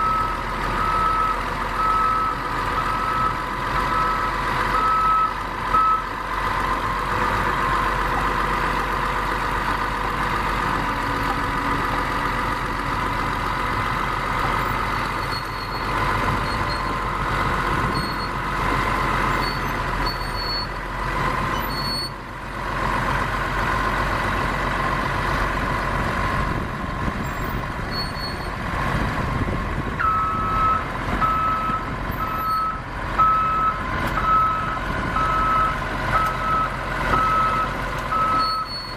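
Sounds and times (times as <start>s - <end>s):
reversing alarm beeps: 0.0s - 6.0s, 30.0s - 38.9s
bulldozer diesel engine running: 0.0s - 38.9s.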